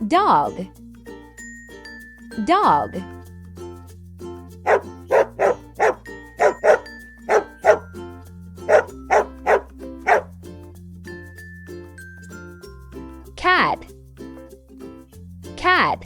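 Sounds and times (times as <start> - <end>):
children's background music: 0.0 - 3.8, 4.7 - 10.2
dog barking: 4.6 - 7.9, 8.6 - 10.3.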